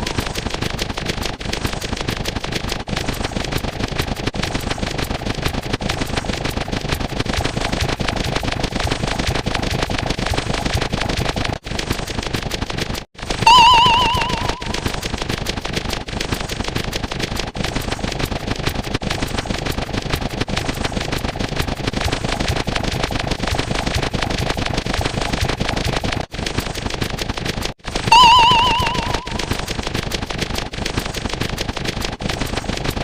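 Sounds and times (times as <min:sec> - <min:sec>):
rapid popping and crackling: 0:00.0 - 0:33.0
short warbling beep: 0:13.5 - 0:14.8, 0:28.1 - 0:29.5.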